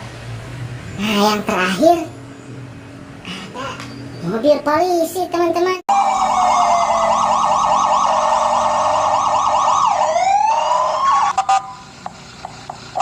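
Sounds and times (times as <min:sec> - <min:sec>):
warbling electronic siren: 0:05.9 - 0:13.0.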